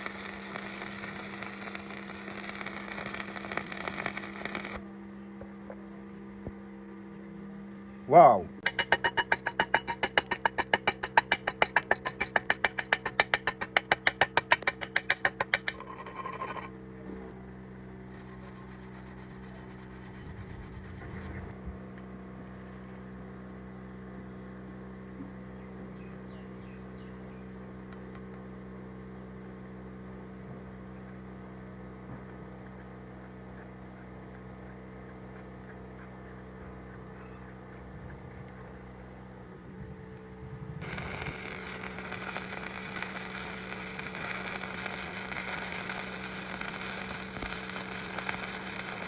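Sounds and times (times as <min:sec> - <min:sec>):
steady low hum: 0:00.0 - 0:49.0
rapid scraping strokes: 0:18.1 - 0:21.5.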